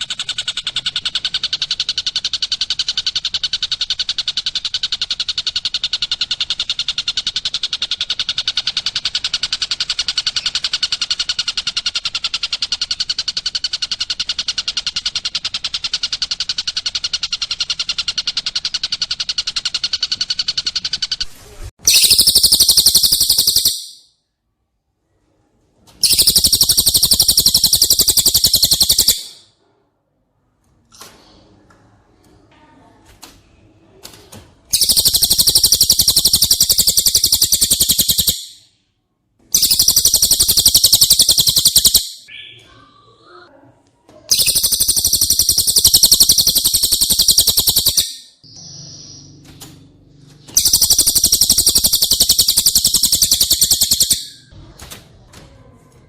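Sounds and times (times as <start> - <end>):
fast high-pitched bird trilling: 0.0 - 24.1, 26.0 - 29.4, 34.7 - 38.7, 39.5 - 42.8, 44.3 - 49.4, 50.4 - 54.6
faint bird chirps: 0.0 - 24.3, 26.0 - 29.5, 34.7 - 38.9, 39.5 - 43.5, 44.3 - 54.5.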